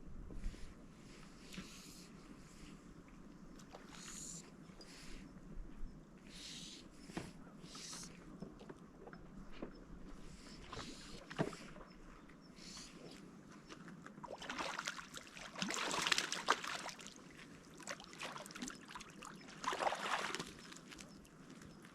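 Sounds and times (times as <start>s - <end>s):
water splashing and sloshing: 3.6s - 4.1s, 8.5s - 21.9s.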